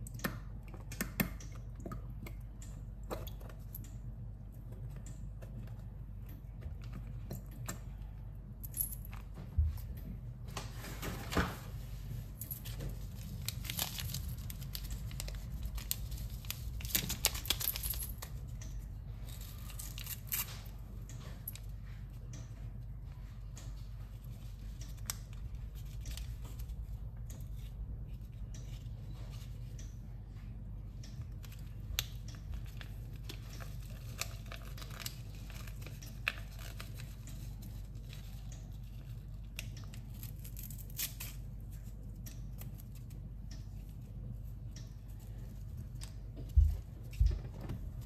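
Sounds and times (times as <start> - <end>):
steady low hum: 0.0 - 48.0
packaging crinkling and tearing: 12.6 - 18.3, 32.7 - 38.4.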